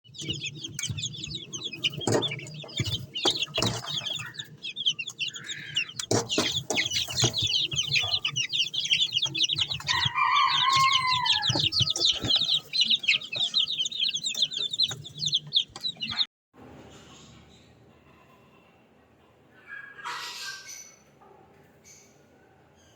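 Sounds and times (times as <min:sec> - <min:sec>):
chicks peeping: 0:00.0 - 0:16.3
knocks: 0:01.9 - 0:04.2
falling chicken call: 0:09.9 - 0:12.6.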